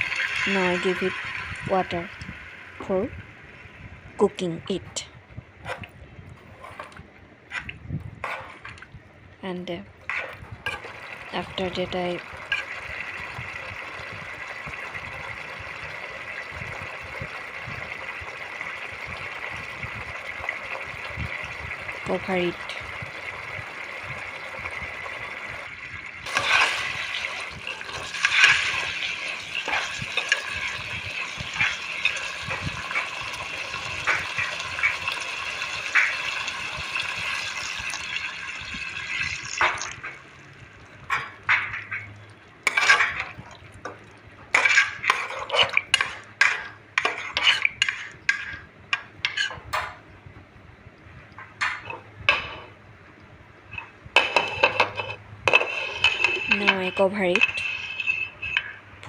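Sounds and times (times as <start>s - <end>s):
curry hissing in a pan: 12.0s - 40.5s.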